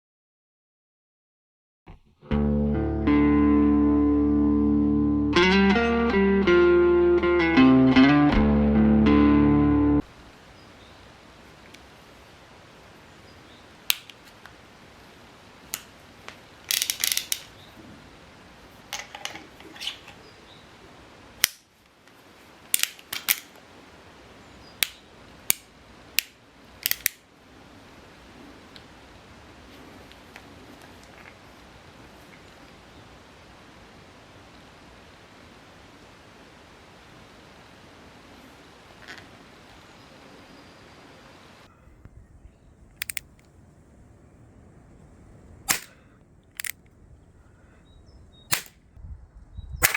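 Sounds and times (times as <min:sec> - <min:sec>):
revolver action clicks: 0:24.8 - 0:27.2, 0:42.9 - 0:43.6, 0:45.7 - 0:47.0
airsoft revolver shots: 0:45.7 - 0:46.0, 0:48.5 - 0:48.8.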